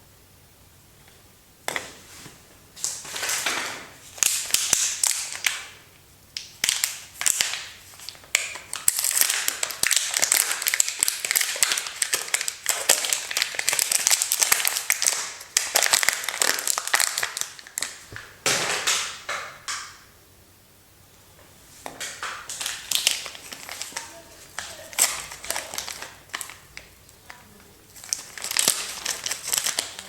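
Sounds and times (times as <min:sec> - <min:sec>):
wrappers crinkling and crackling: 0:02.8 - 0:05.8, 0:06.4 - 0:19.1, 0:21.8 - 0:30.0.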